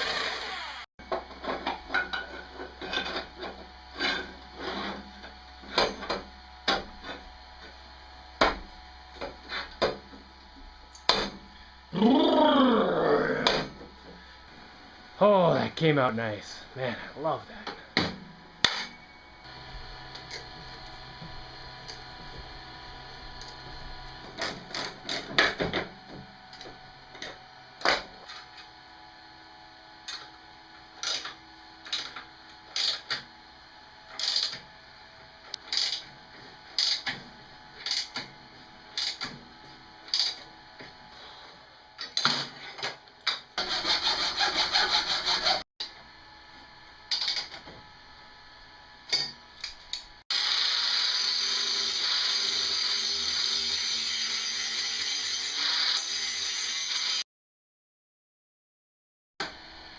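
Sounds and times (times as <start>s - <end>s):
tool rough noise: 0.0s - 0.9s, 43.6s - 45.6s.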